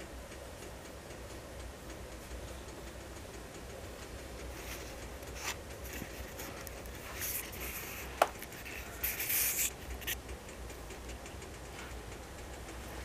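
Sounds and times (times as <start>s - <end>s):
wood fire crackling: 0.4s - 13.0s
short spurts of hiss: 6.9s - 10.2s.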